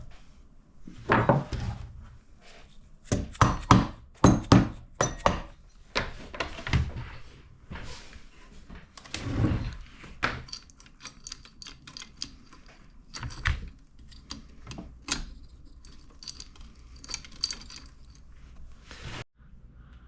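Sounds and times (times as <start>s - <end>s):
metal tools clinking: 10.2s - 18.4s.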